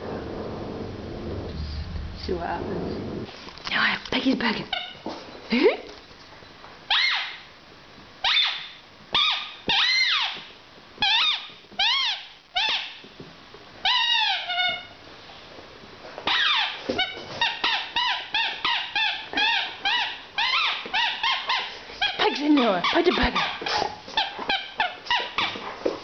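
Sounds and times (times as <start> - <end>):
squeaky dog toy squeaking: 4.7 - 5.0, 6.9 - 7.4, 8.2 - 10.4, 11.0 - 13.0, 13.8 - 15.0, 16.2 - 25.6.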